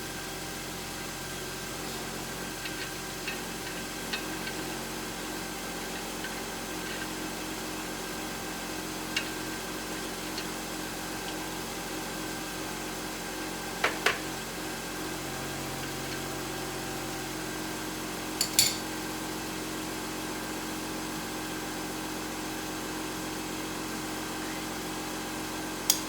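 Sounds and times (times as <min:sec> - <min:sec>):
hand tools clinking on metal: 0:18.4 - 0:18.8.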